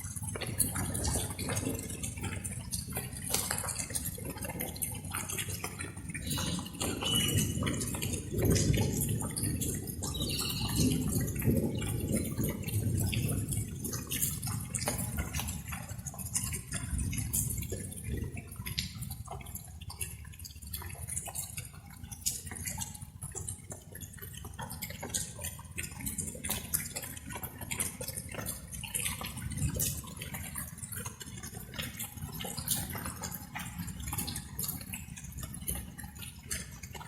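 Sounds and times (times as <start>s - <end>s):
raindrops dripping and tapping: 0.0s - 37.0s.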